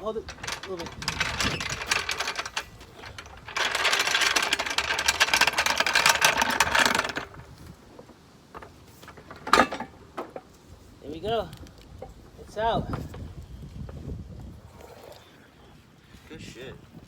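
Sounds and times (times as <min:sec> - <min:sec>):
rapid mechanical clicking rattle: 0:00.0 - 0:07.5.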